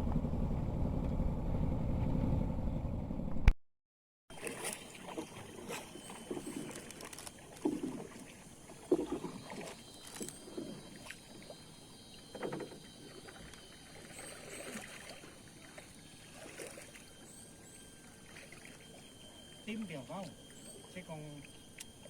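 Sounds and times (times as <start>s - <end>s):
small boat splashing on water: 4.3s - 22.0s.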